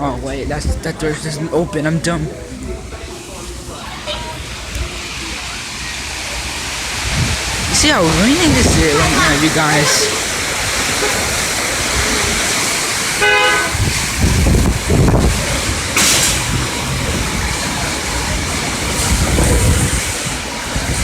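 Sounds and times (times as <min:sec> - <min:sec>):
heavy rain pouring: 0:00.0 - 0:21.0
wind buffeting microphone: 0:00.2 - 0:01.1, 0:06.7 - 0:21.0
car horn toot: 0:11.0 - 0:11.4, 0:13.2 - 0:13.9.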